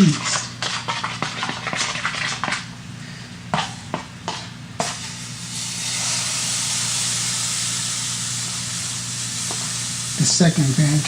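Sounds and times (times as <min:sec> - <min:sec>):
batter sizzling in a hot pan: 0:00.0 - 0:02.7, 0:03.5 - 0:11.0.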